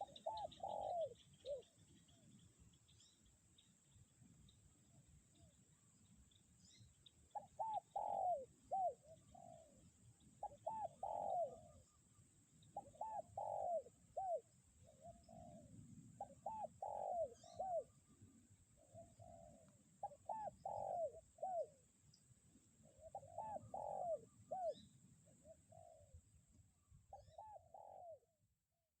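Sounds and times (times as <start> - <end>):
dove cooing: 0.0 - 2.4, 7.3 - 12.0, 12.6 - 18.1, 18.8 - 21.8, 22.8 - 26.2, 27.1 - 28.3.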